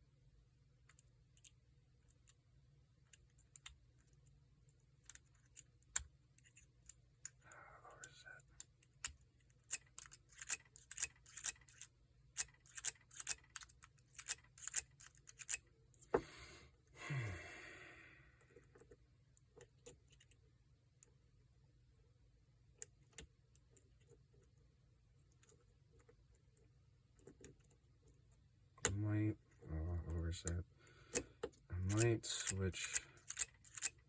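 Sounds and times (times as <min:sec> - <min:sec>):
lock pick clicking in padlock: 0:09.0 - 0:15.6, 0:31.1 - 0:34.0.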